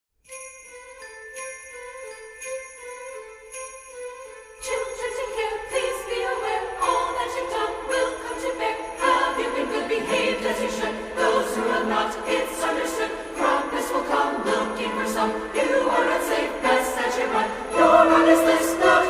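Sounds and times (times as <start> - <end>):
sleigh bells jingling: 0.2 - 19.0
choir singing: 4.6 - 19.0.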